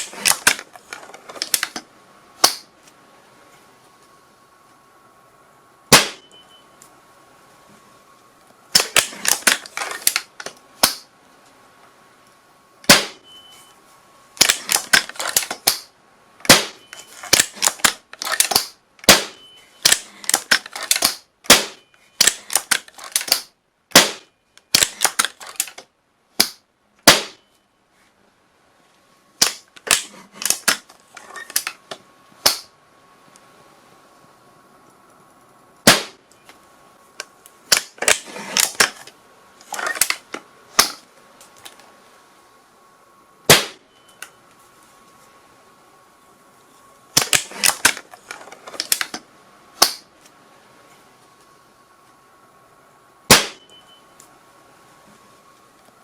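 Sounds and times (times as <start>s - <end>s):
gunshots: 5.9s - 6.3s, 12.9s - 13.2s, 16.5s - 20.0s, 21.0s - 22.4s, 23.3s - 25.2s, 26.4s - 27.4s, 35.9s - 36.2s, 43.5s - 43.8s, 53.3s - 53.6s.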